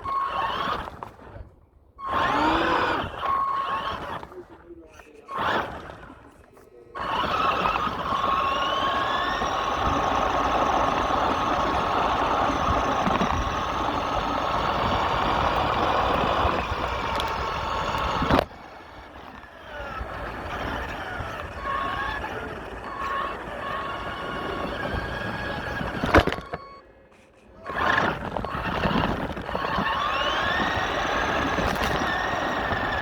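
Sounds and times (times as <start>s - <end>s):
rc truck motor whining: 0.0s - 33.0s.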